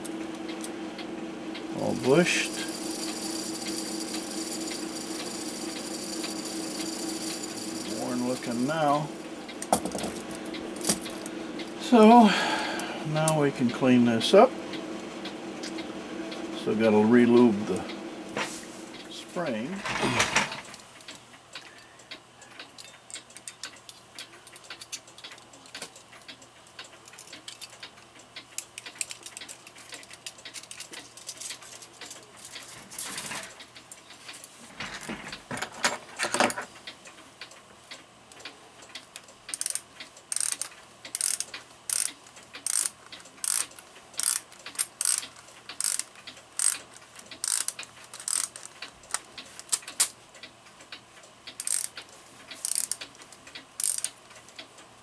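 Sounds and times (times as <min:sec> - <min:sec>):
small clicks and handling clatter: 0:22.6 - 0:36.9, 0:38.3 - 0:50.2
mainspring ratcheting click: 0:39.2 - 0:50.1, 0:51.5 - 0:54.6.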